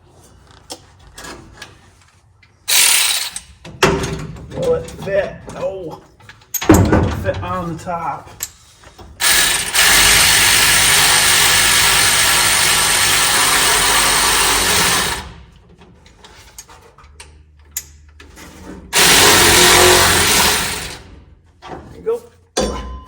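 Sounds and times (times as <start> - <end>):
electric ratchet wrench spinning: 2.7 - 3.4, 9.2 - 15.4, 19.0 - 21.1.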